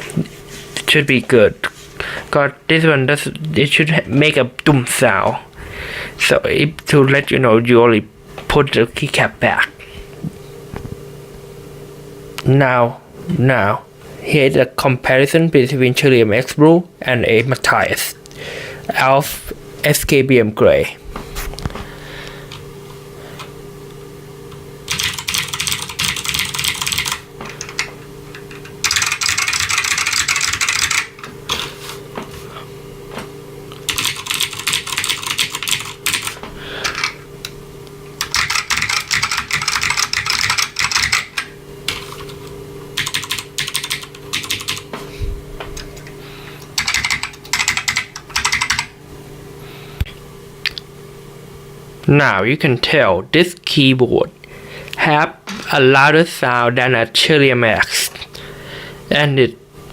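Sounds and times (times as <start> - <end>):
steady low hum: 0.0 - 59.9
typing on mechanical keyboard: 24.9 - 27.8, 28.8 - 31.6, 33.9 - 36.3, 38.2 - 42.0, 43.0 - 44.8, 46.8 - 48.9.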